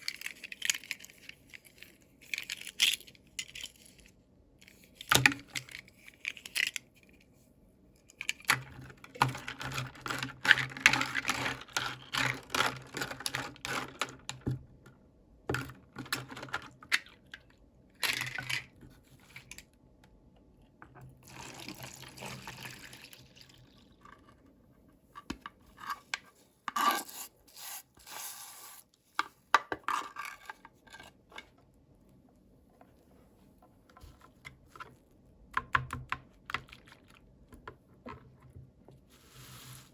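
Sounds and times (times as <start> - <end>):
plastic pieces clicking and tapping: 8.1 - 14.6.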